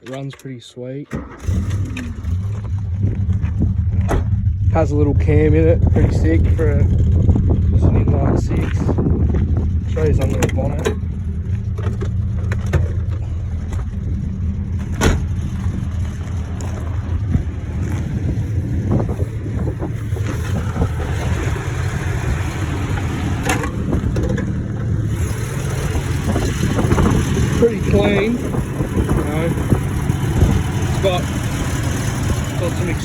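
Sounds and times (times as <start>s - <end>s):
car engine idling: 1.1s - 33.0s.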